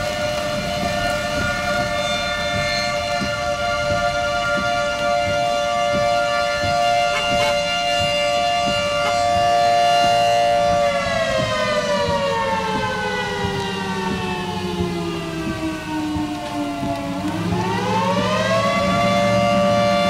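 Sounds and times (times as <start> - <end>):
warning siren wailing: 0.0 - 20.0.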